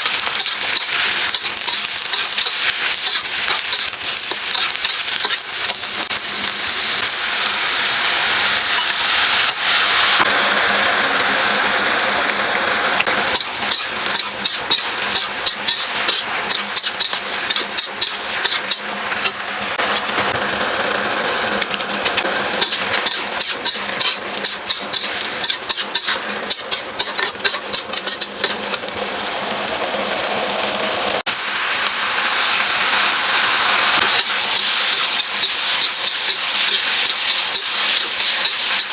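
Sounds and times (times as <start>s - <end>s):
food sizzling in a wok: 0.0s - 38.9s
spatula clacking against wok: 13.3s - 19.4s, 22.5s - 28.8s.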